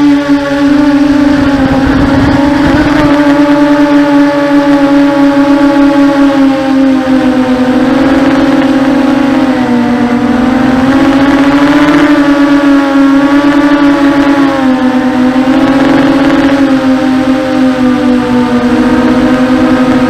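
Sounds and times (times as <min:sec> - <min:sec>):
quadcopter motors whining: 0:00.0 - 0:20.0.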